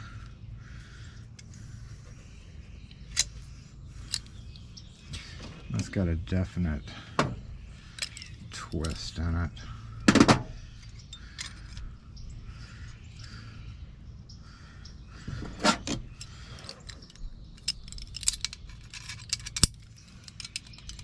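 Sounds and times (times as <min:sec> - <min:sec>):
metal parts and pliers clinking: 0:02.9 - 0:03.4, 0:04.0 - 0:04.4, 0:07.9 - 0:09.3, 0:10.1 - 0:11.9, 0:16.2 - 0:21.0.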